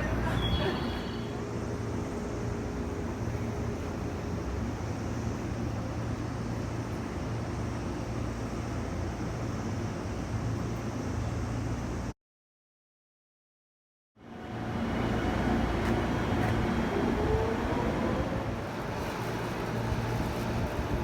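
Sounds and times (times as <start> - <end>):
electric train rumbling and humming: 0.0 - 12.1, 14.2 - 21.0.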